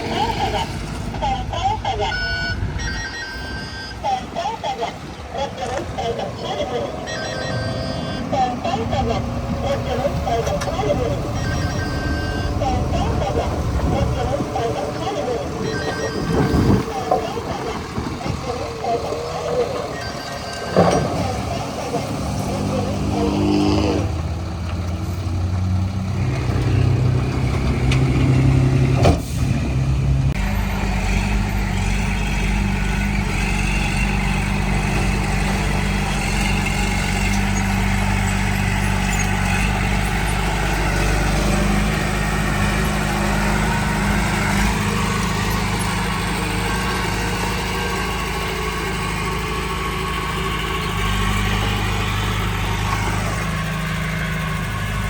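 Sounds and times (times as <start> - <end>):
heavy diesel engine running: 0.0 - 55.0.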